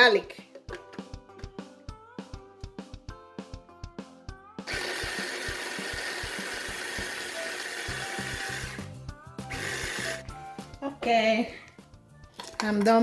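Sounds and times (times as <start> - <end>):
background music with a beat: 0.5 - 13.0
electric blender running: 4.7 - 10.3.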